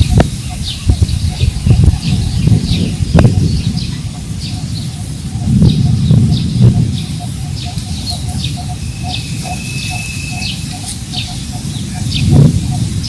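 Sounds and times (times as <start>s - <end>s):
birds chirping: 0.0s - 13.0s
wind rumbling on microphone: 0.0s - 13.0s
long thin bird whistle: 7.6s - 12.3s.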